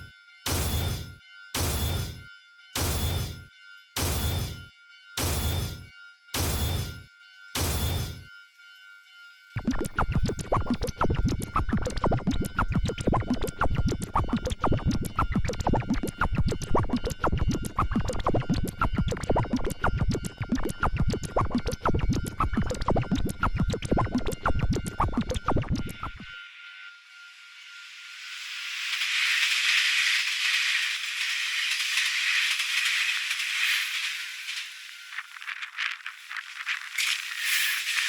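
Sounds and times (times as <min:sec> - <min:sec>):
steady high ringing tone: 0:00.0 - 0:38.0
hiss: 0:27.6 - 0:38.0.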